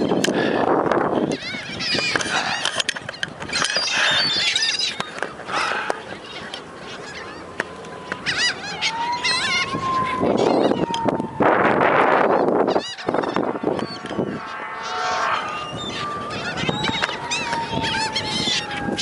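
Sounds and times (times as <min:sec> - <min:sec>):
seagulls squawking: 0:00.0 - 0:19.0
thin whine: 0:07.2 - 0:19.0.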